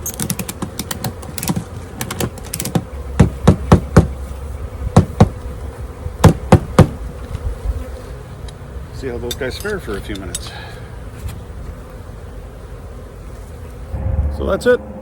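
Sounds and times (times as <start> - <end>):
sharp clicks and knocks: 0.0 - 4.1
honeybees buzzing: 0.0 - 15.0.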